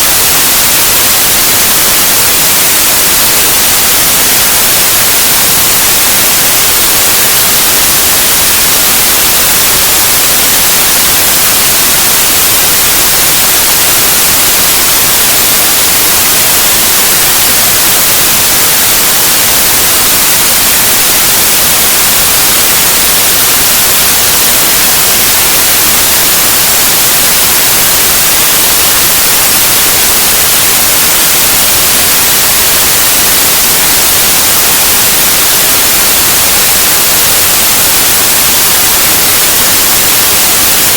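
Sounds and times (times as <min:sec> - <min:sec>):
loud steady white noise hiss: 0:00.0 - 0:40.9.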